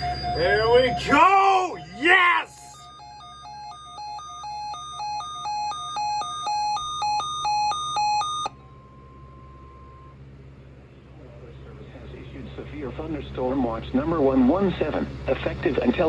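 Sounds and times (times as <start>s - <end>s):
faint steady alert tone: 0.0s - 8.6s
two-tone radio alert alarm: 0.0s - 8.6s.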